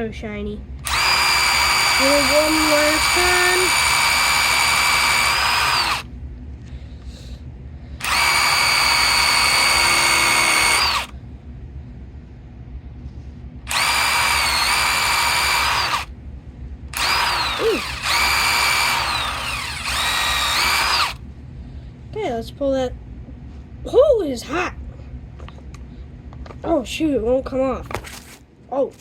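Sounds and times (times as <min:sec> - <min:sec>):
power drill whining: 0:00.8 - 0:06.1, 0:08.0 - 0:11.1, 0:13.7 - 0:16.1, 0:16.9 - 0:21.2.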